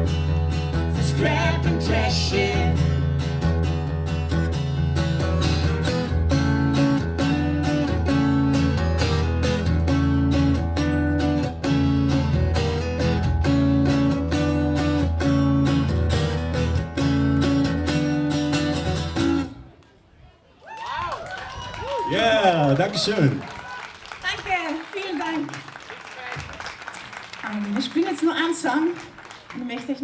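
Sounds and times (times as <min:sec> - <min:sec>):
sustained low bass: 0:00.0 - 0:19.6
guitar riff: 0:00.0 - 0:19.8
strummed guitar rhythm: 0:00.0 - 0:19.8.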